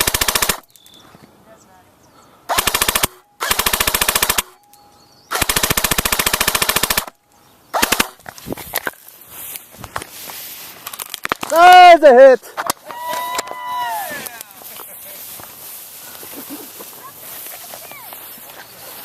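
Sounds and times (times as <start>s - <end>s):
airsoft gun firing bursts: 0.0s - 0.7s, 2.5s - 4.6s, 5.3s - 8.2s.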